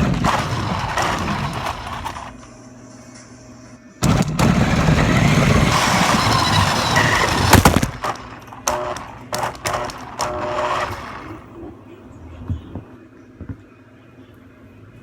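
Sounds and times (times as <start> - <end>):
toy car rattling across floor: 0.0 - 2.3, 4.1 - 11.4
sharp crack: 4.0 - 10.4
knocks and clicks: 7.6 - 11.2.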